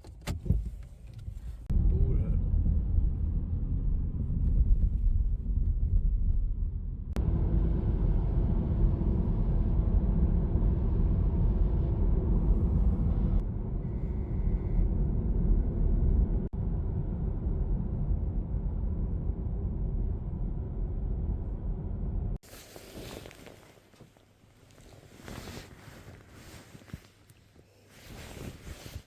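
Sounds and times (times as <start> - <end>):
car rumbling on road: 0.0 - 22.5.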